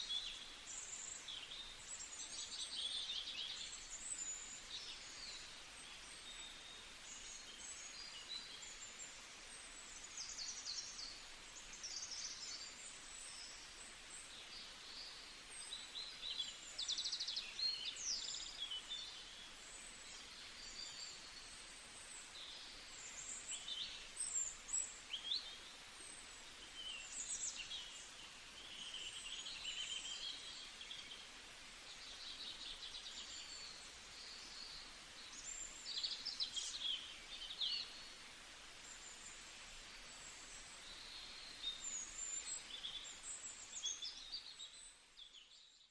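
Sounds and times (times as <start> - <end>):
faint steady hiss: 0.0 - 45.9
songbirds chirping: 0.0 - 45.9.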